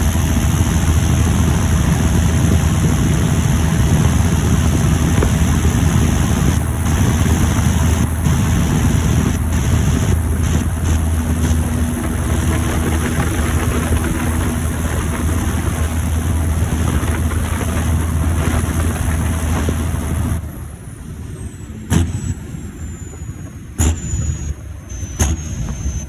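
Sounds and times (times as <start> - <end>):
tractor diesel engine under load: 0.0 - 26.0
turbo whistle winding down: 20.7 - 26.0.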